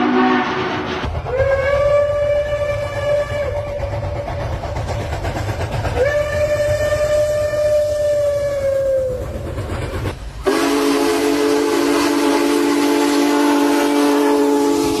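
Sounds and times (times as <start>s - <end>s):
train horn chord: 0.0s - 3.7s, 10.5s - 15.0s
train horn with falling pitch: 0.0s - 4.0s, 6.0s - 9.2s, 10.4s - 15.0s.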